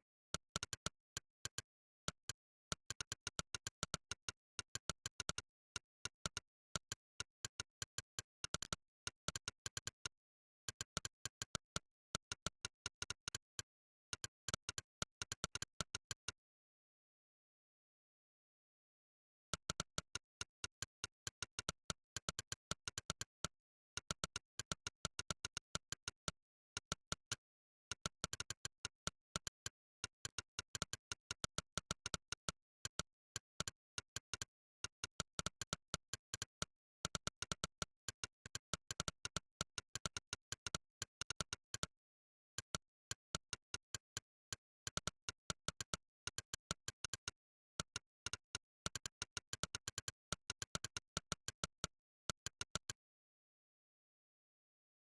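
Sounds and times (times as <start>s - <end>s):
synthetic typing clicks: 19.5s - 42.0s, 42.6s - 53.0s.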